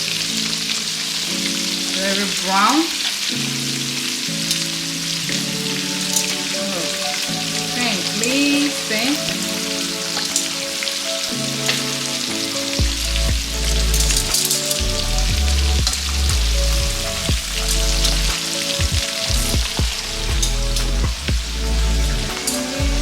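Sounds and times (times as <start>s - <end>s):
food deep-frying in oil: 0.0s - 22.8s
background music with bass: 11.3s - 23.0s.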